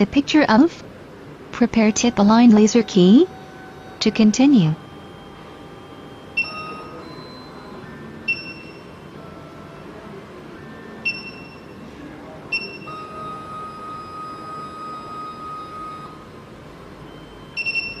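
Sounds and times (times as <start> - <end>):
steady electronic tone: 1.3 - 18.0
short high electronic beeps: 4.8 - 9.1, 11.0 - 11.9.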